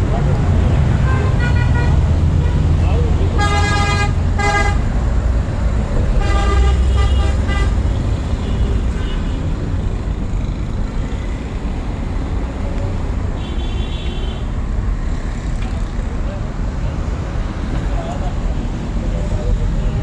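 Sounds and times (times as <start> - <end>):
road traffic rumble: 0.0 - 20.0
car horn toots: 1.0 - 5.0, 6.1 - 9.5.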